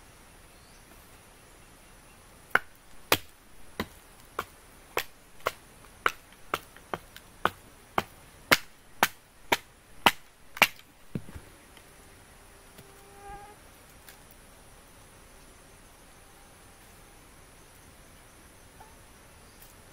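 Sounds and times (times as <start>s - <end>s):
chopping wood strikes: 2.5s - 11.4s
insect buzzing: 9.4s - 19.9s.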